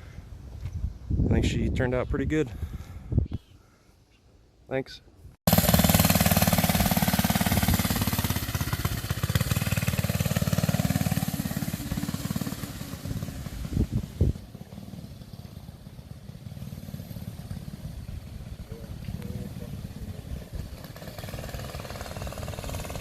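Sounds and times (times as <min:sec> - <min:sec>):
small engine running: 0:05.5 - 0:23.0.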